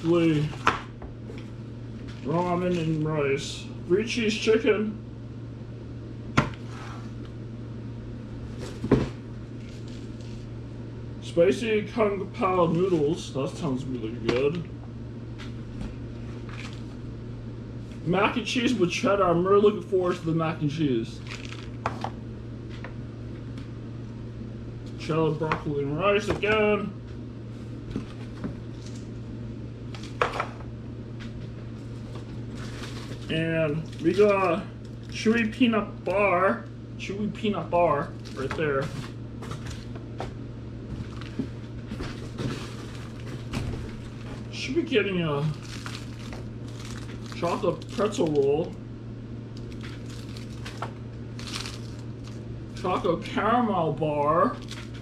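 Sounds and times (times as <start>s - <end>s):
steady low hum: 0.0s - 55.0s
packets rustling: 21.2s - 21.8s, 31.8s - 35.2s, 45.5s - 48.5s, 49.6s - 52.9s.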